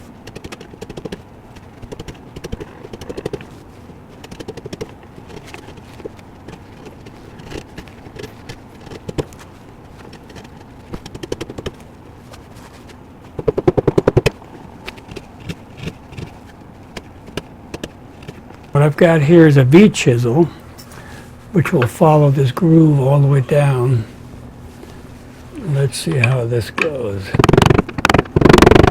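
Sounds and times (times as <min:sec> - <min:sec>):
rattling run of clicks: 0:26.2 - 0:28.9.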